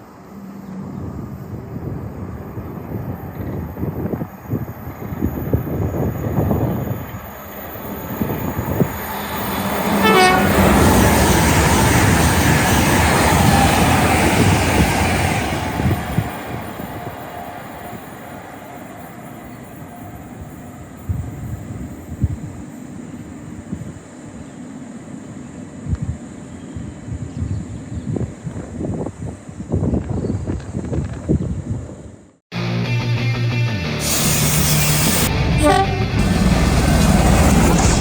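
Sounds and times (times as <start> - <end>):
train passing at speed: 0.0 - 29.8, 34.1 - 38.0
train horn: 9.8 - 11.0, 35.3 - 37.1.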